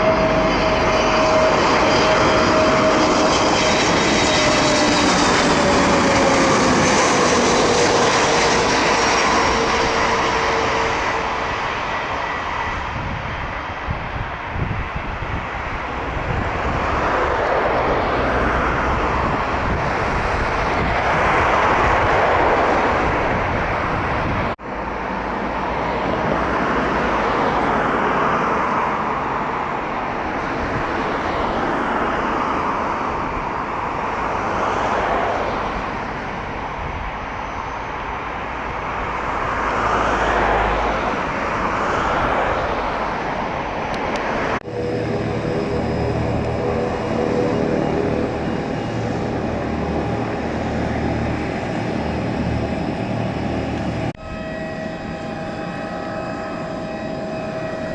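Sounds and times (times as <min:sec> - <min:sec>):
jet engine roar: 0:00.0 - 0:57.9.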